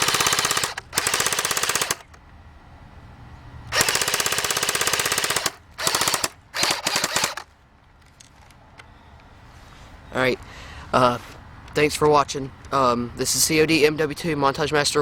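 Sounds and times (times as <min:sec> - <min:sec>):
electric airsoft gun firing bursts: 0:00.0 - 0:02.2, 0:03.7 - 0:07.5.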